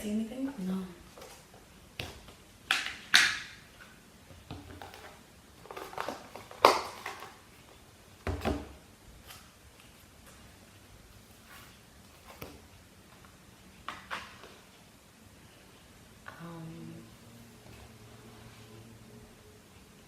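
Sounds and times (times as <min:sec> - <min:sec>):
plastic containers clattering: 0:01.1 - 0:08.8.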